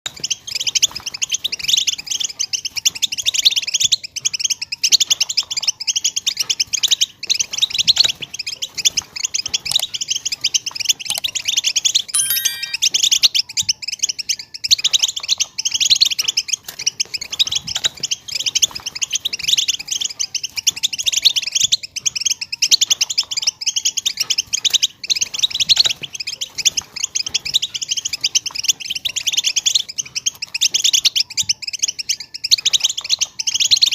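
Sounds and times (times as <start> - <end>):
finch twittering song: 9.7 - 12.9.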